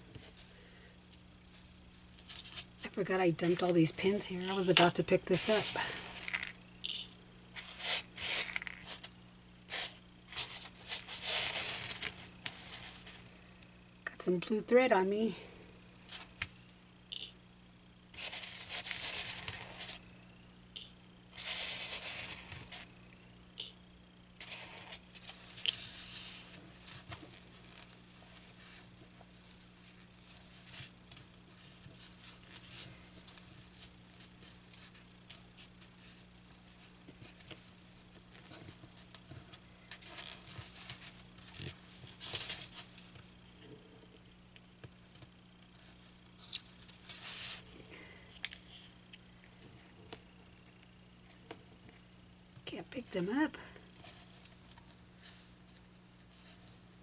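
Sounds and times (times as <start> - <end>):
faint steady hum: 0.0 - 57.0
pins clicking and scraping: 3.6 - 9.1, 18.1 - 20.0.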